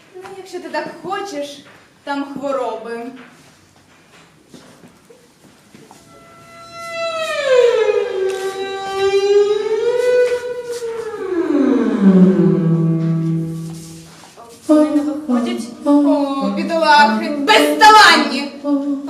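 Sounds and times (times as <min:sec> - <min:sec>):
eerie wailing tone: 0:06.1 - 0:19.0.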